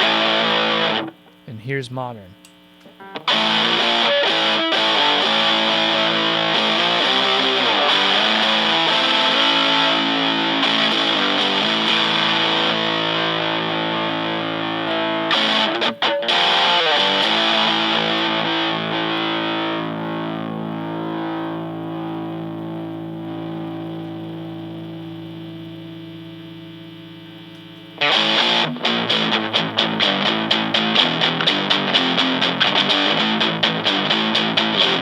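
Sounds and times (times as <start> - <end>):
distorted electric guitar chords: 0.0 - 35.0.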